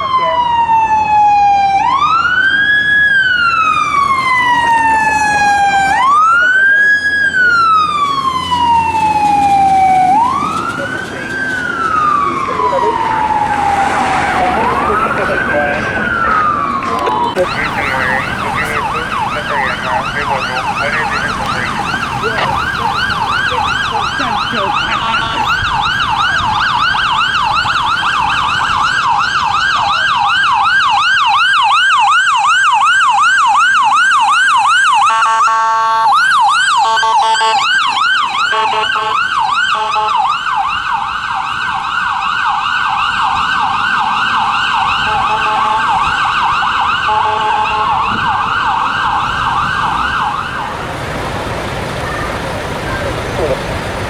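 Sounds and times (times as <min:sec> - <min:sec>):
siren on fast yelp: 0:00.0 - 0:51.0
short horn blasts: 0:45.0 - 0:45.9.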